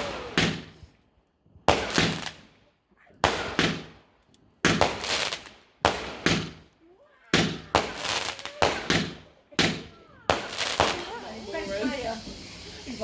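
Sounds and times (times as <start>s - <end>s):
fireworks bangs with echo: 0.0s - 0.9s, 1.6s - 2.6s, 3.2s - 4.0s, 4.6s - 6.7s, 7.3s - 11.6s.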